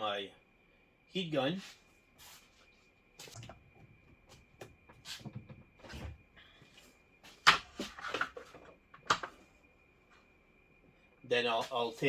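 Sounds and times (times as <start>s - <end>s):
faint high whine: 0.0s - 12.0s
objects clicking and knocking: 7.4s - 9.4s.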